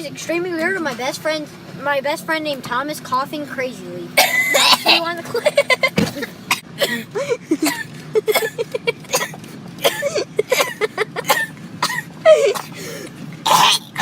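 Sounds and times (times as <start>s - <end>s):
person coughing hard: 4.2s - 14.0s.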